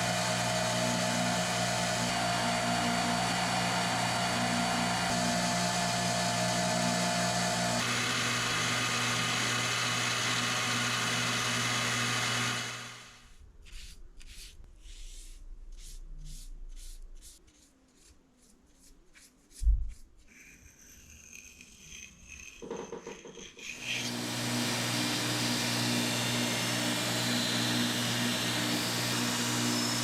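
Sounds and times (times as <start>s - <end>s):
electric grinder running: 0.0s - 13.2s, 23.6s - 30.0s
scraping strokes: 13.6s - 24.0s.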